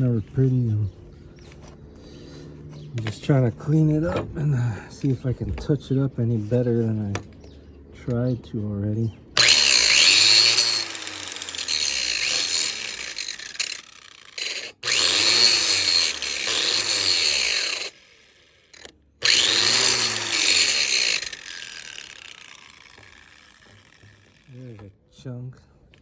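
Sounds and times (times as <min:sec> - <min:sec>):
angle grinder grinding metal: 0:09.4 - 0:24.8.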